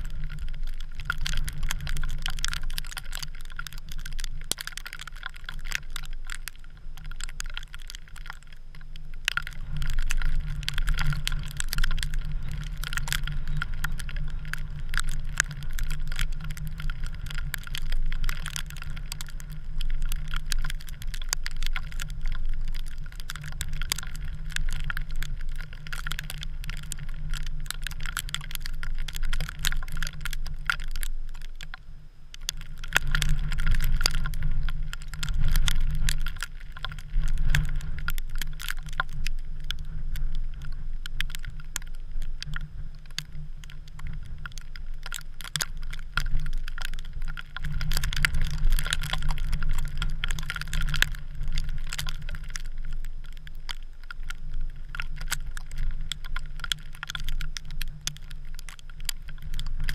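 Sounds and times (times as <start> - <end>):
crackle of small clicks: 0.0 - 59.9
wind rumbling on microphone: 0.0 - 59.9.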